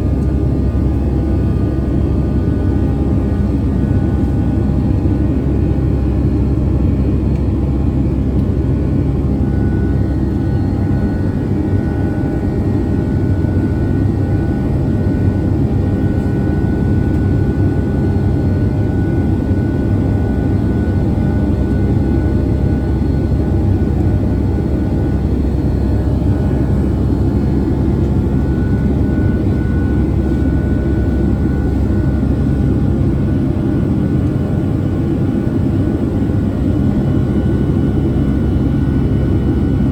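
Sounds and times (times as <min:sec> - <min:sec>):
faint whining tones: 0:09.1 - 0:39.9.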